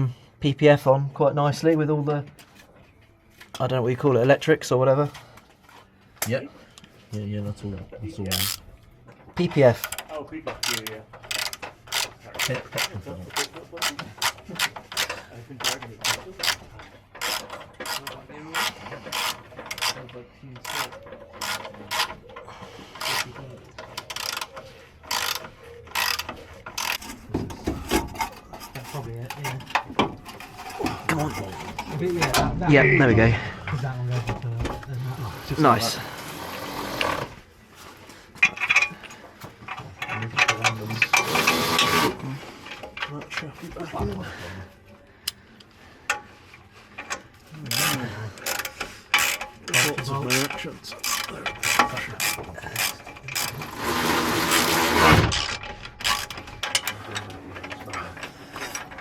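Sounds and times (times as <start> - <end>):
ratchet wrench clicking: 8.3 - 8.7, 9.7 - 20.0, 20.6 - 22.1, 24.0 - 24.5, 25.1 - 27.1, 47.7 - 56.9.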